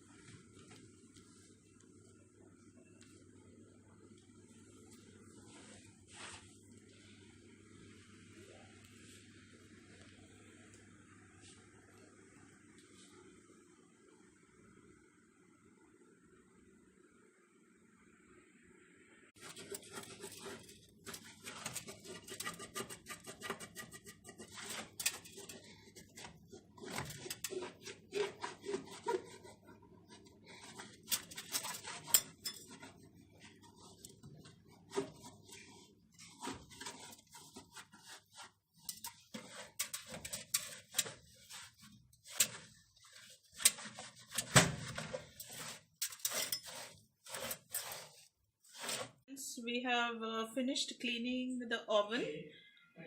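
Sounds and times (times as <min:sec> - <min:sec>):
low hum: 0:06.7 - 0:19.4.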